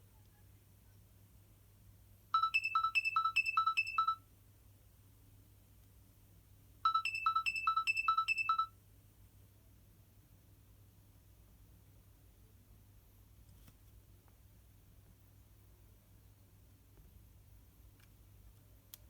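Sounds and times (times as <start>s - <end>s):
mobile phone beeping ringtone: 2.4s - 4.2s, 6.9s - 8.7s.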